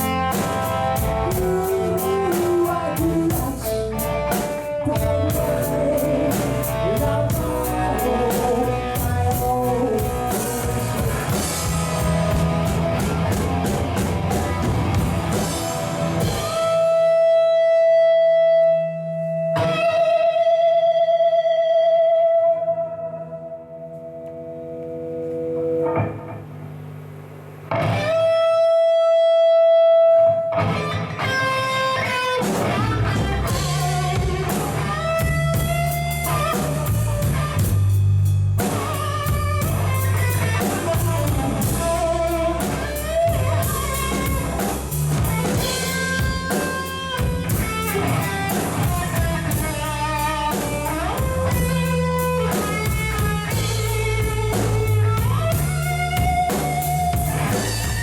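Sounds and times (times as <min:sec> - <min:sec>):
rock music with guitar and drums: 0:00.0 - 0:26.4, 0:27.7 - 0:58.0.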